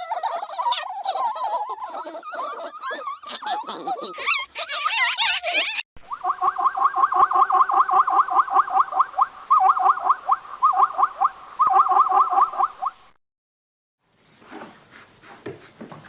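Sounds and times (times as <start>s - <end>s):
animal chirping rapidly: 0.0s - 12.7s.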